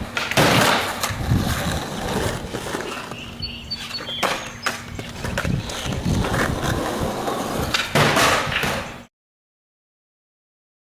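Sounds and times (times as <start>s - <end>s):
skateboard rolling and clacking: 0.0s - 3.3s, 4.0s - 9.0s
skateboard scraping: 0.0s - 9.1s
skateboard knocks: 7.6s - 9.0s.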